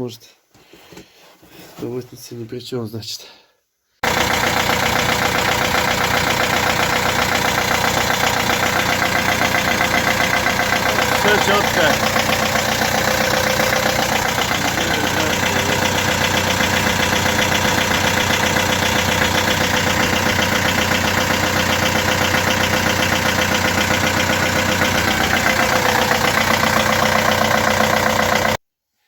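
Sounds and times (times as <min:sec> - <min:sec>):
van engine running: 0:04.0 - 0:28.6.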